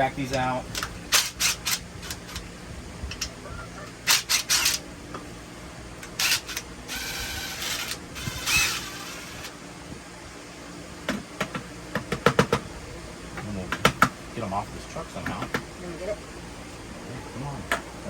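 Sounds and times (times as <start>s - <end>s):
cordless drill running: 6.2s - 9.5s.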